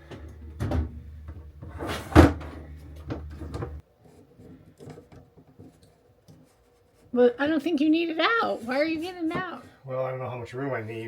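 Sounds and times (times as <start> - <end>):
appliance knocks and clunks: 0.0 - 3.8
low background hum: 0.0 - 3.8.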